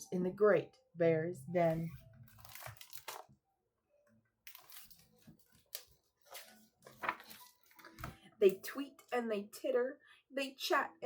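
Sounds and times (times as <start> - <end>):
paper pages rustling: 1.7 - 3.3, 4.5 - 8.2.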